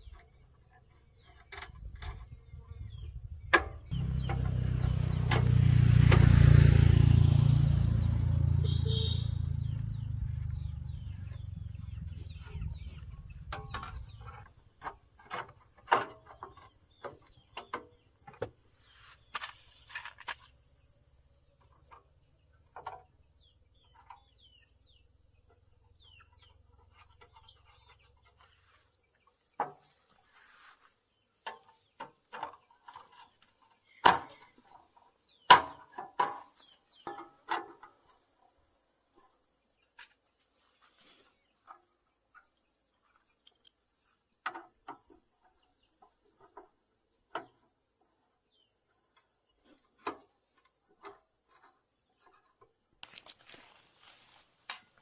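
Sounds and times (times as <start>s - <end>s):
birds chirping: 0.0s - 37.3s
low engine rumble: 2.4s - 14.5s.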